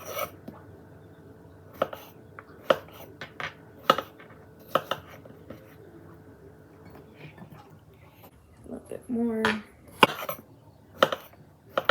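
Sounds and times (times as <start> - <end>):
dishes and utensils clinking: 0.0 - 0.6, 1.7 - 5.8, 6.8 - 8.3, 9.4 - 11.9.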